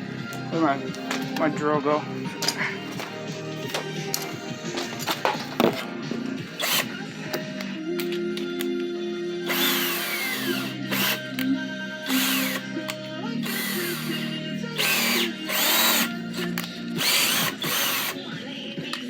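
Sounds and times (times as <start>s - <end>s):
power drill motor whirring: 6.3s - 7.7s, 9.4s - 18.3s.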